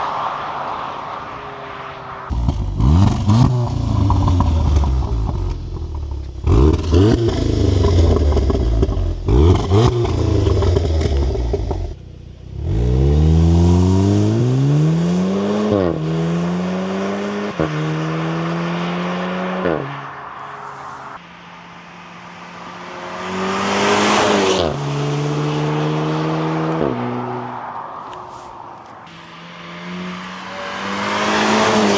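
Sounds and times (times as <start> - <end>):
engine throttle blips: 0.0 - 16.0
car engine accelerating: 0.0 - 31.9
exhaust pops: 2.3 - 12.1.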